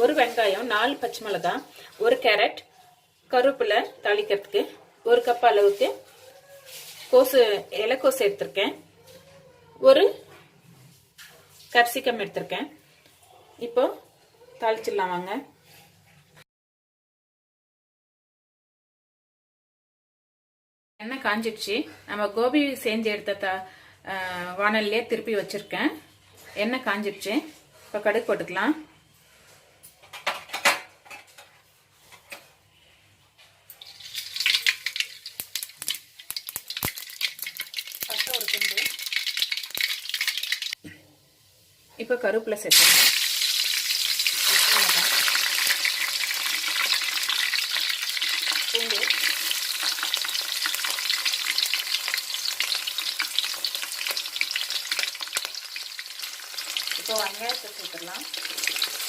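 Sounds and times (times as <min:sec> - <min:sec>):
mustard seeds popping in hot oil: 0:33.8 - 0:40.8, 0:42.7 - 0:59.0.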